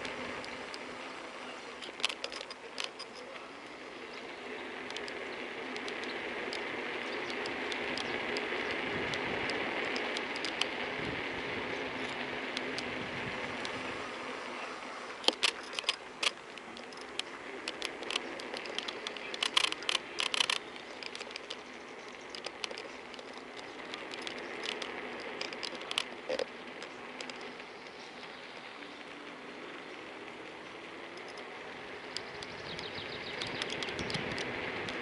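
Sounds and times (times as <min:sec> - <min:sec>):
tyre noise: 0:00.0 - 0:35.0
phone holder creaking and clicking: 0:01.8 - 0:03.2, 0:15.2 - 0:21.6, 0:22.3 - 0:26.5.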